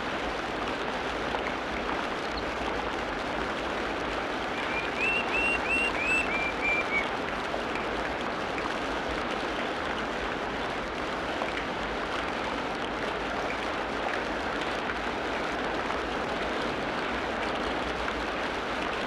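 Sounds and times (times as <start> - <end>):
rushing water: 0.0 - 19.0
bird chirping: 4.5 - 7.1.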